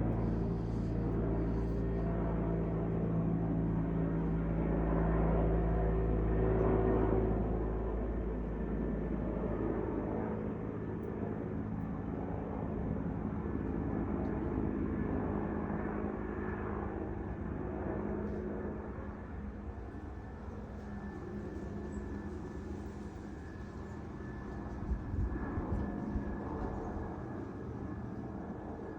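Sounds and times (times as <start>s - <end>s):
engine drone: 0.0s - 3.0s.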